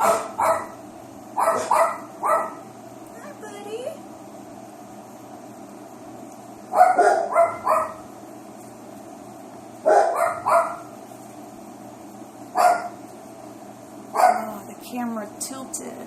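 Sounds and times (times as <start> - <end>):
dog barking: 0.0 - 0.8, 1.4 - 2.7, 6.7 - 8.0, 9.8 - 10.9, 12.5 - 13.0, 14.1 - 14.5.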